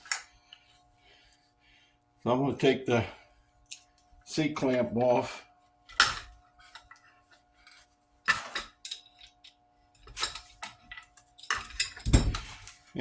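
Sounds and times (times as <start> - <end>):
metal clamp clinking and rattling: 7.7 - 12.8.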